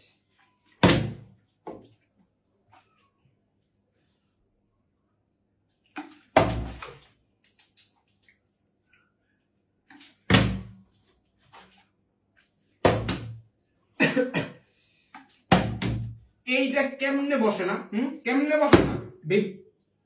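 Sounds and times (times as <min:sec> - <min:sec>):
plastic bottle thudding on hard surface: 0:00.8 - 0:01.8, 0:10.3 - 0:10.8, 0:12.8 - 0:13.4, 0:15.5 - 0:16.2, 0:18.7 - 0:19.1.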